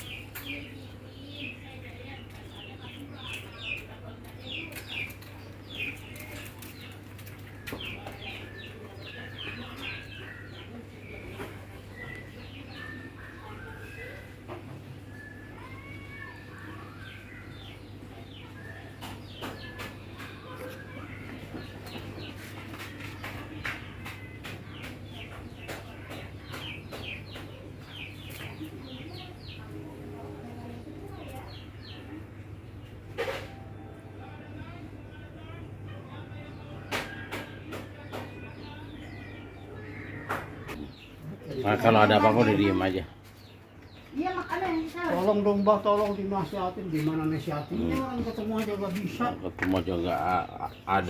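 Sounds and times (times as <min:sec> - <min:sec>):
small birds chirping: 0:00.0 - 0:51.0.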